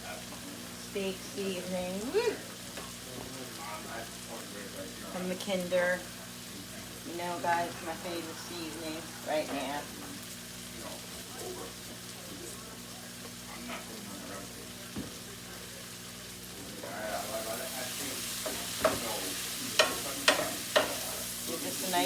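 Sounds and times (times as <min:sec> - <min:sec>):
food sizzling in a frying pan: 0:00.0 - 0:22.0
utensil knocking against pan: 0:18.4 - 0:19.1, 0:19.8 - 0:21.0.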